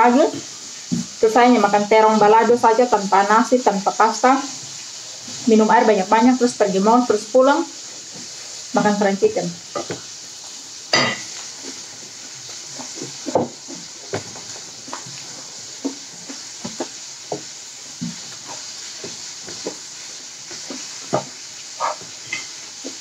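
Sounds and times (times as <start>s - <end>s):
steady hiss: 0.0s - 23.0s.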